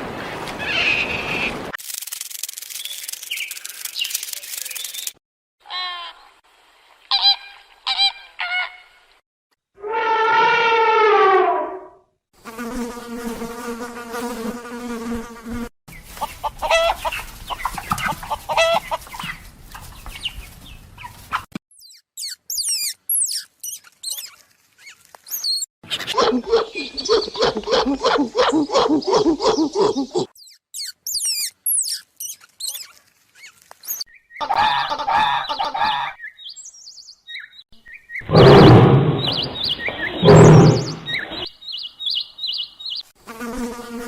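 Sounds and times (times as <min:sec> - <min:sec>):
short chirping calls: 0:02.5 - 0:05.2, 0:21.7 - 0:25.7, 0:29.1 - 0:34.4, 0:36.2 - 0:43.1
high twittering bird calls: 0:02.8 - 0:05.2, 0:21.7 - 0:43.1
fowl calls: 0:16.2 - 0:19.4, 0:34.4 - 0:36.2.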